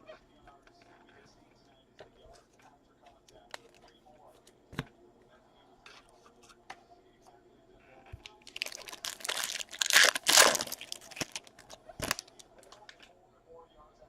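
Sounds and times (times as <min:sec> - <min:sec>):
foil wrapper tearing and crinkling: 0:08.4 - 0:12.4.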